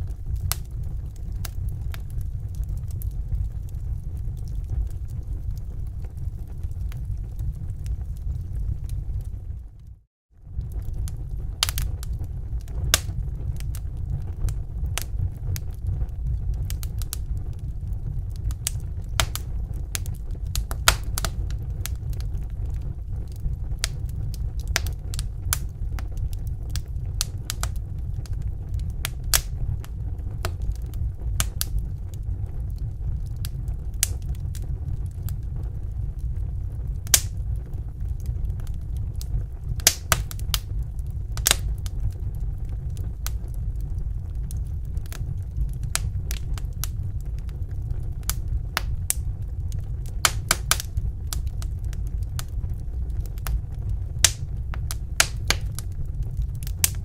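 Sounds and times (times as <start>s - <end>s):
low fire rumble: 0.0s - 57.0s
wood fire crackling: 0.0s - 57.0s.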